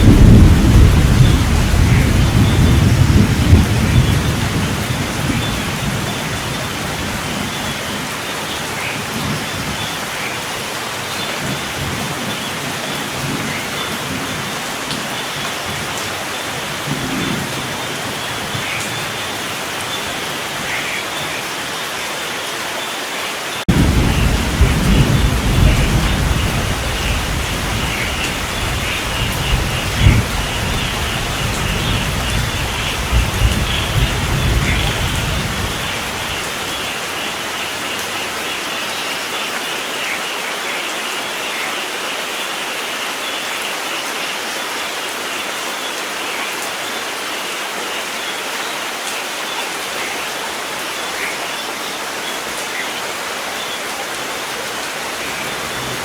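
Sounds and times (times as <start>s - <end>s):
low rolling thunder: 0.0s - 7.6s, 23.7s - 37.3s, 54.2s - 56.0s
rain falling: 0.0s - 56.0s.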